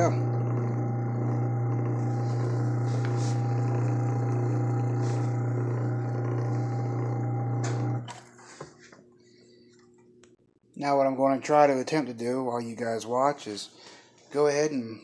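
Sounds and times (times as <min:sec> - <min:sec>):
electric motor humming: 0:00.0 - 0:08.1
motor coasting down: 0:00.0 - 0:08.1.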